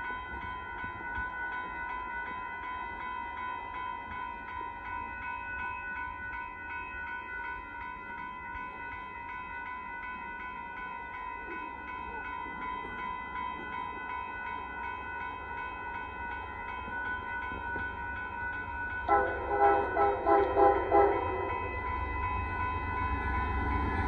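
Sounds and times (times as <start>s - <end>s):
crossing bell ringing: 0.0s - 24.0s
locomotive horn blasts: 19.1s - 21.4s.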